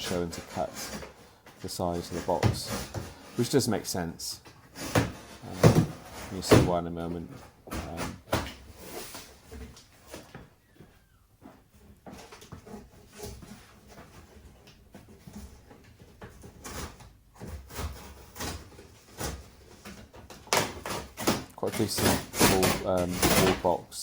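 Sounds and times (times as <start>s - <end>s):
knife cutting cardboard box: 0.0s - 1.2s, 4.7s - 6.7s, 12.2s - 23.8s.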